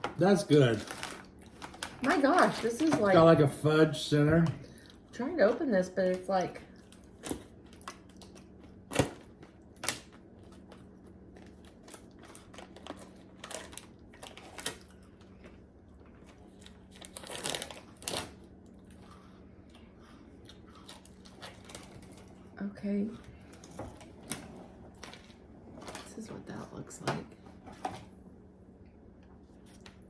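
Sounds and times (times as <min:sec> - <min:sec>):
snack wrapper crinkling and tearing: 0:00.2 - 0:03.4, 0:06.8 - 0:19.2, 0:20.4 - 0:22.4.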